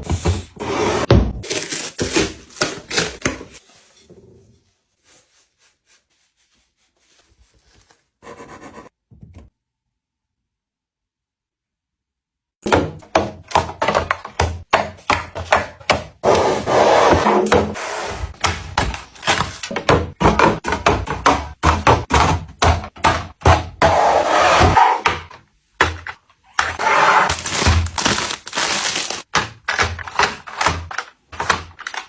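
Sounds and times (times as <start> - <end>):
rubbing and scraping: 3.5 - 9.0
household items knocking: 12.6 - 16.2, 18.4 - 23.9.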